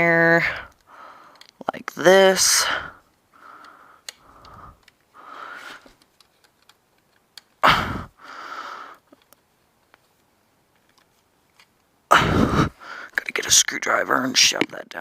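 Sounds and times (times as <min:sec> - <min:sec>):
faint clicks of handling wire: 0:00.6 - 0:01.8, 0:03.0 - 0:07.6, 0:08.9 - 0:11.9
person breathing and sniffing: 0:02.6 - 0:06.0, 0:07.6 - 0:09.2, 0:12.1 - 0:13.2.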